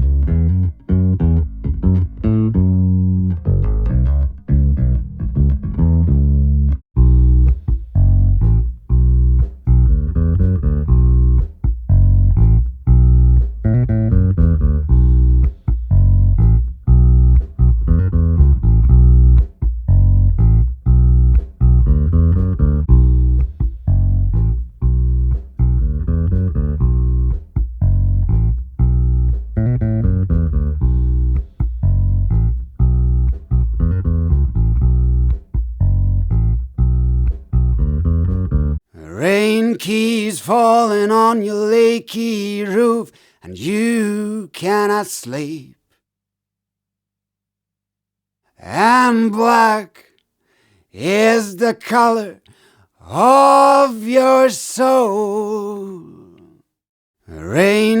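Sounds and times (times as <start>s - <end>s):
bass guitar plucked notes: 0.0s - 38.8s.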